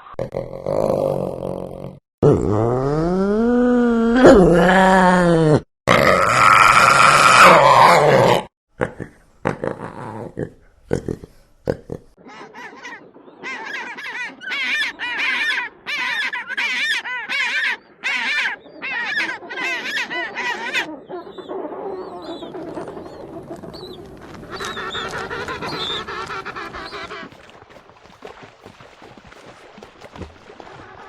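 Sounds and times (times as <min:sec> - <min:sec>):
chorus of bird calls: 0:12.2 - 0:27.4
loud wavering bird calls: 0:12.2 - 0:27.4.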